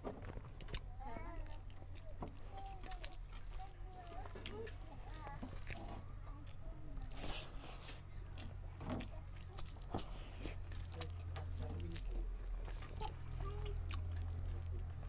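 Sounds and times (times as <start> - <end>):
person chewing food: 0.0 - 15.0.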